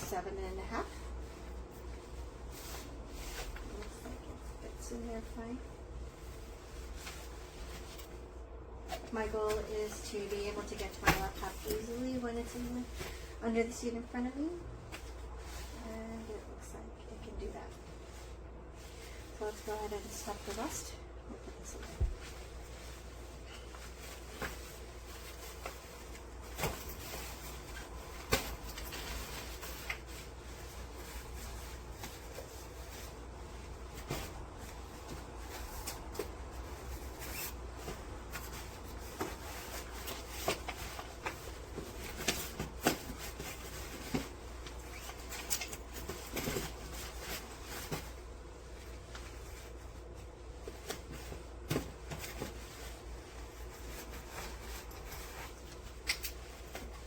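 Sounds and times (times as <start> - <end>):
rustling: 0.0 - 57.0.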